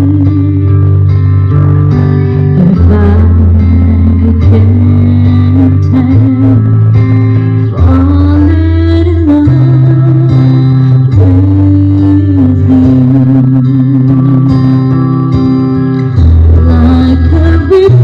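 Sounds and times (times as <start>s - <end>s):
bass line: 0.0s - 18.0s
guitar: 0.0s - 18.0s
person singing: 0.0s - 18.0s
song over sound system: 0.0s - 18.0s.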